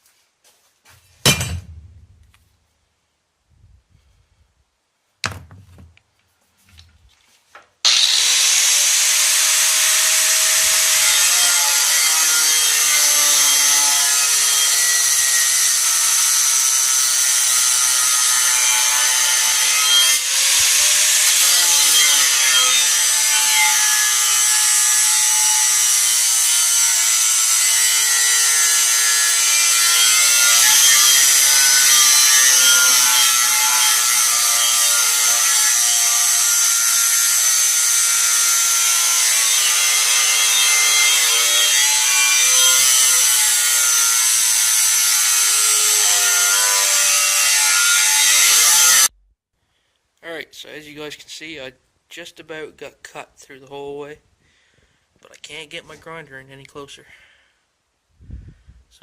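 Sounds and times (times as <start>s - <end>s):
angle grinder cutting steel: 7.9s - 49.1s.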